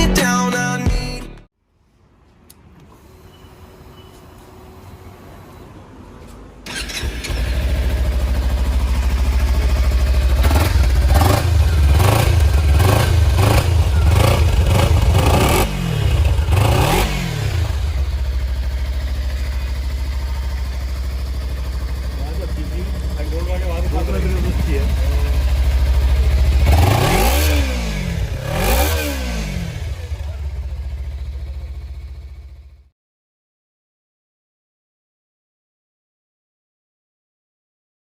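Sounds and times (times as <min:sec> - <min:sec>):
motorcycle engine starting and idling: 0:02.5 - 0:32.9
engine revving throttle blips: 0:02.9 - 0:32.6.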